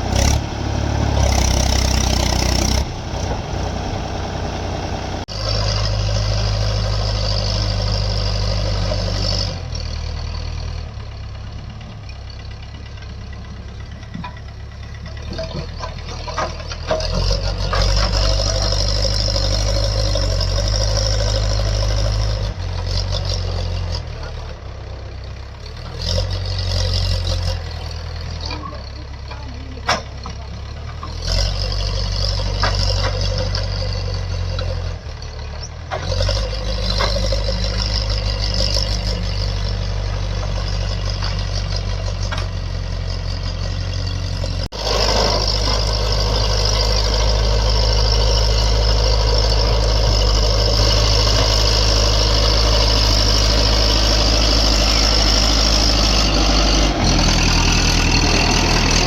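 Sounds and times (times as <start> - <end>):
diesel engine under load: 0.0 - 59.0.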